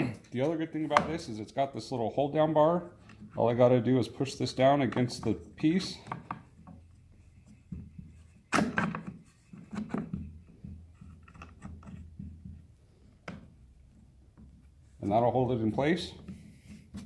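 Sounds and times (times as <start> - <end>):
wooden knocks and clicks: 6.0 - 14.8.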